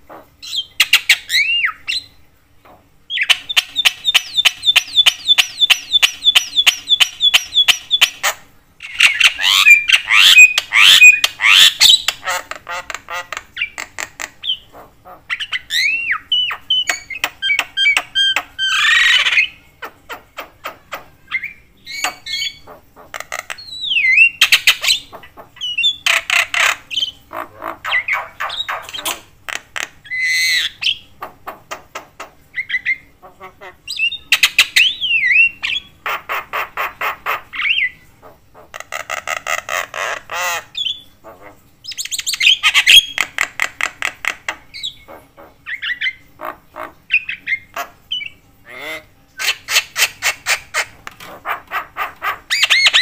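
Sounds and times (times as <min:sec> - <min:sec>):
bird chattering whistles and squawks: 0:03.1 - 0:29.2, 0:44.8 - 0:53.0.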